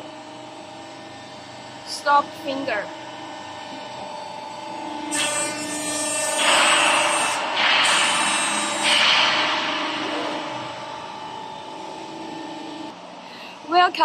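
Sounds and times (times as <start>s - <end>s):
high motor whine and hiss: 0.0s - 14.0s
machine hum: 0.0s - 14.0s.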